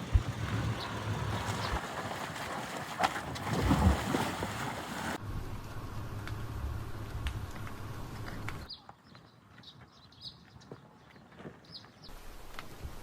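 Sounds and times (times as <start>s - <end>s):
wind buffeting microphone: 0.0s - 4.6s
rushing water: 0.0s - 5.2s.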